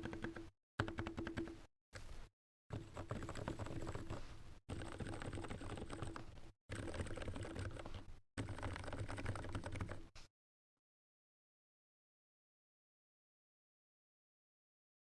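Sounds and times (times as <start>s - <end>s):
typing on mechanical keyboard: 0.0s - 1.6s, 2.7s - 10.2s.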